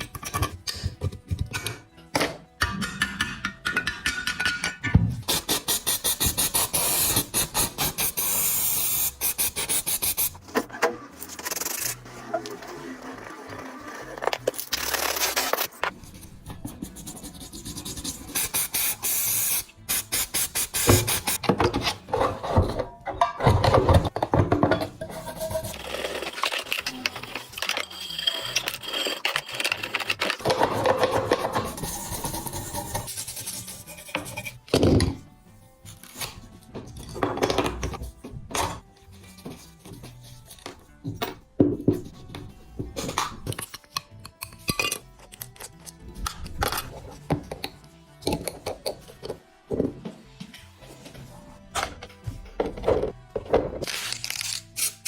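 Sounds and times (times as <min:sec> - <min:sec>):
background music: 0:00.0 - 0:55.0
scraping and rubbing on metal: 0:25.0 - 0:34.7.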